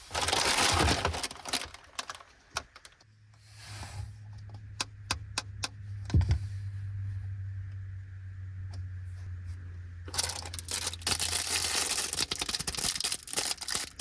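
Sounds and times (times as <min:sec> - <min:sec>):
plastic packaging crinkling: 0:00.0 - 0:02.9, 0:10.1 - 0:14.0
packets clicking on hard surface: 0:10.2 - 0:14.0.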